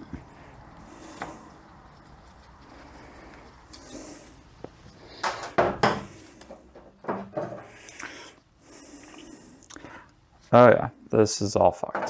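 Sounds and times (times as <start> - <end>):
metal parts knocking on bench: 5.2 - 6.1, 7.0 - 7.7.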